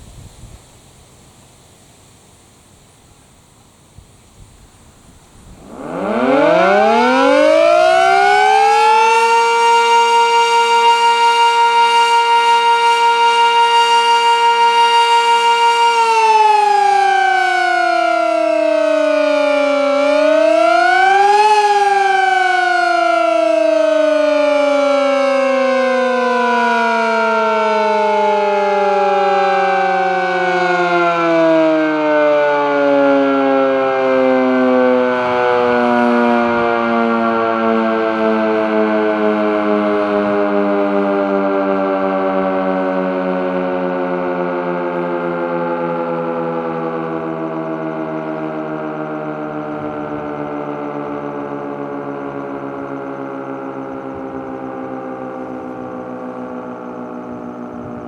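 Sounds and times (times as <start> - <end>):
siren winding down: 5.6 - 58.0.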